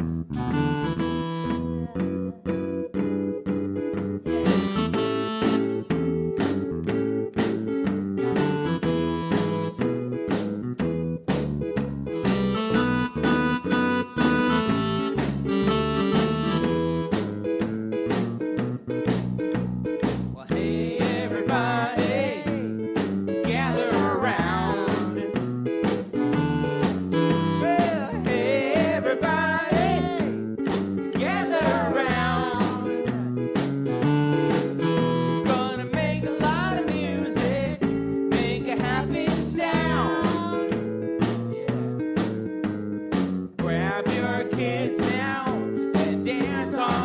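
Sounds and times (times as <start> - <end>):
guitar: 0.0 - 47.0
walking bass line: 0.0 - 47.0
steady drum beat: 3.0 - 47.0
person singing: 4.3 - 5.6, 20.4 - 22.8, 23.4 - 25.4, 27.2 - 30.4, 31.2 - 33.1, 34.8 - 40.8, 43.6 - 47.0.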